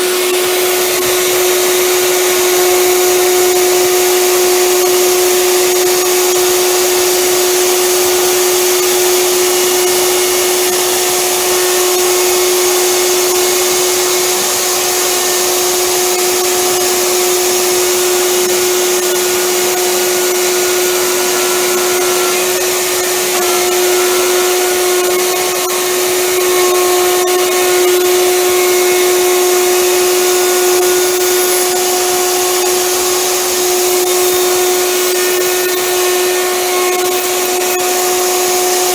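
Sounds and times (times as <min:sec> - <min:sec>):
electric router cutting wood: 0:00.0 - 0:38.9.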